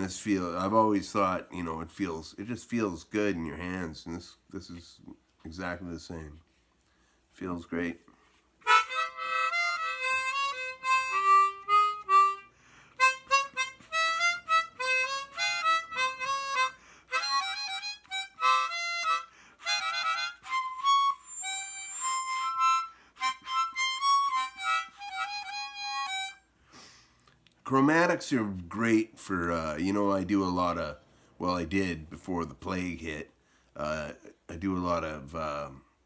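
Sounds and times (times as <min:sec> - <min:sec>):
chromatic harmonica solo: 0:08.6 - 0:26.9.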